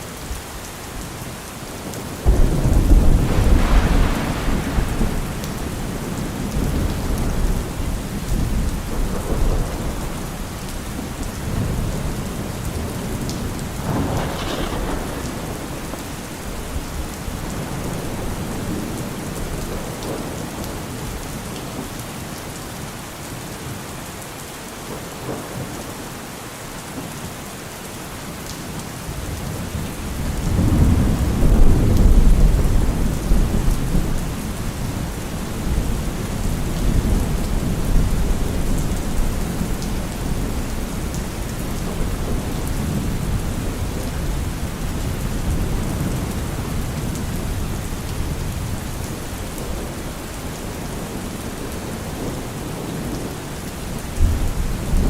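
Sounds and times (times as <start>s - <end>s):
steady rain: 0.0s - 55.0s
rolling thunder: 2.2s - 20.4s, 29.4s - 51.2s.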